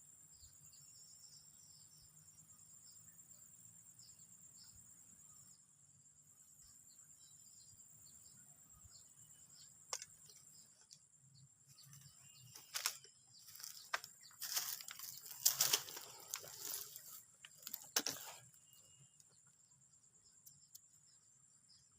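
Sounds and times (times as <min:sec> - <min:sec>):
crickets chirring: 0:00.0 - 0:21.9
rustling handling noise: 0:12.0 - 0:18.5.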